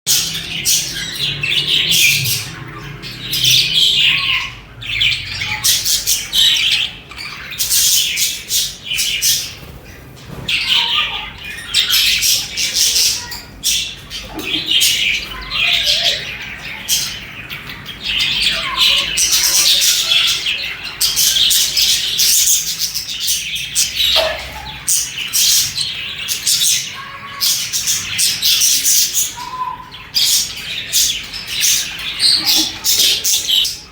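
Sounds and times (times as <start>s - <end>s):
budgerigars chirping: 0.1s - 33.9s.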